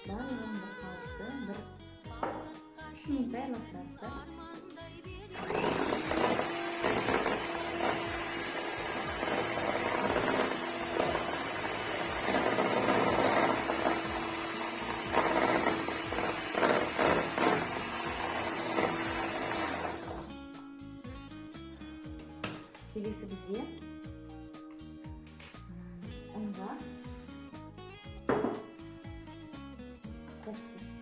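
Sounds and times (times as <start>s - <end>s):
electric mixer beating batter: 5.3s - 20.4s.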